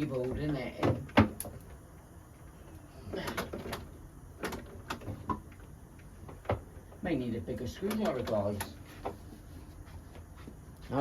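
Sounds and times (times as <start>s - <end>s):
sharp clicks and knocks: 3.1s - 7.0s.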